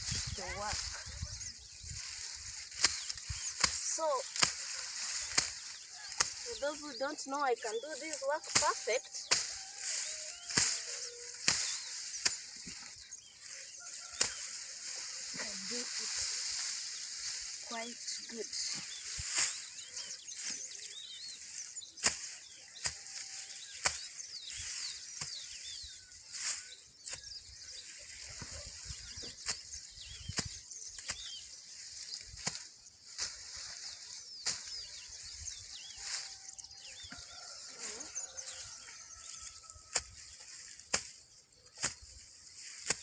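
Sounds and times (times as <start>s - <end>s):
machete slashing through grass: 2.4s - 6.6s, 8.4s - 13.6s, 14.2s - 20.5s, 21.3s - 25.6s.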